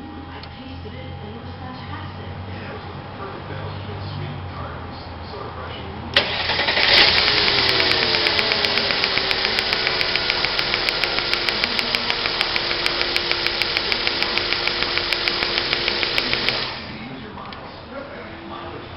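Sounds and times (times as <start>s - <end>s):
car engine running: 6.2s - 17.2s
regular engine tick: 6.2s - 17.6s.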